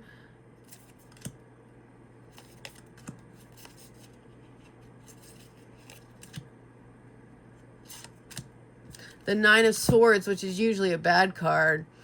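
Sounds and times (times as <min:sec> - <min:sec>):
low steady hum: 0:00.0 - 0:12.0
cards tapping and swishing: 0:00.7 - 0:01.4, 0:02.3 - 0:06.5.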